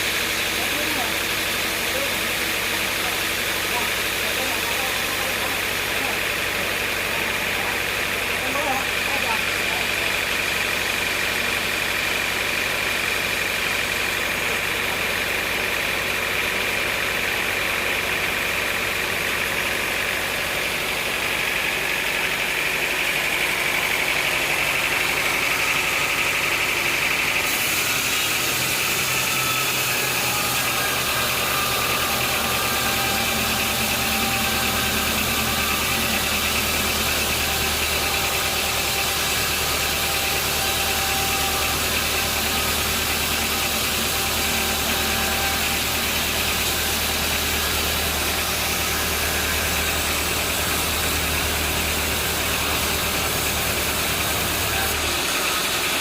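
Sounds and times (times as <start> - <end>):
sawmill saw whining: 0.0 - 56.0
low machinery hum: 23.2 - 55.2.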